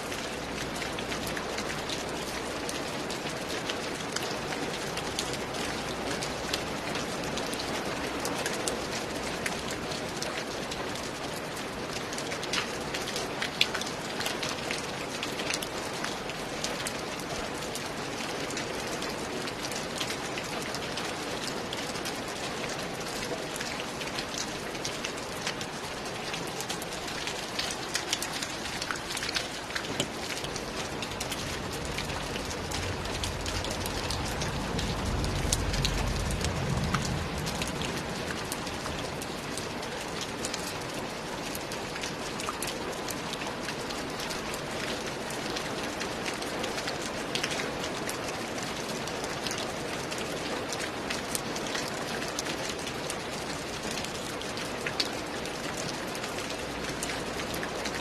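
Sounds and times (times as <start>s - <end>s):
steady rain: 0.0s - 58.0s
low rumble: 31.0s - 39.6s.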